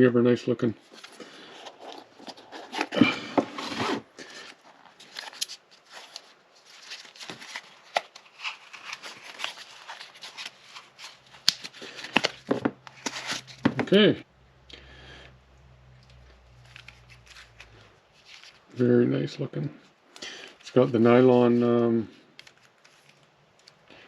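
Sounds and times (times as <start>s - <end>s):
packaging rustling: 0.8s - 13.9s, 16.6s - 18.8s, 22.2s - 24.0s.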